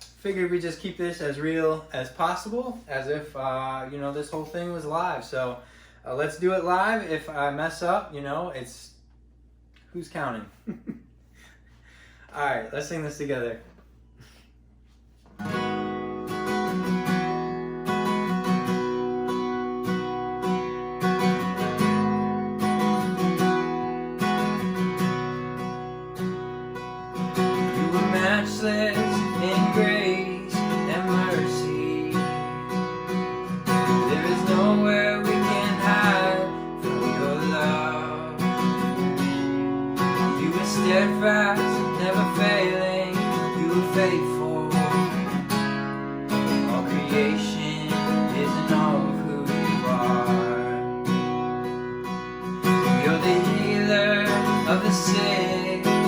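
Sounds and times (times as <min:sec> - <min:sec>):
acoustic guitar strumming: 0:15.4 - 0:56.0.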